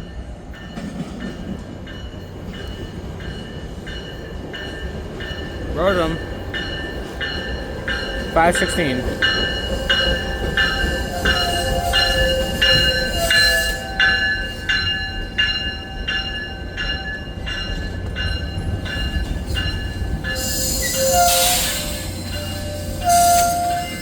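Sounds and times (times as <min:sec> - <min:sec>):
standing train rumble: 0:00.0 - 0:24.0.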